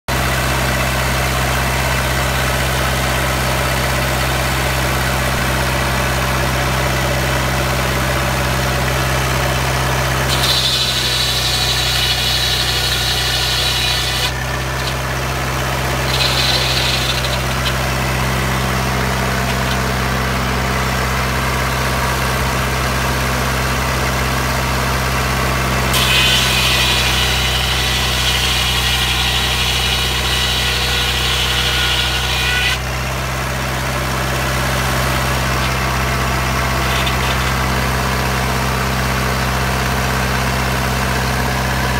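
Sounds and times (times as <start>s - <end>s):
diesel engine running: 0.1s - 41.9s
saw blade hissing: 10.3s - 14.9s, 16.0s - 17.8s, 36.8s - 37.6s.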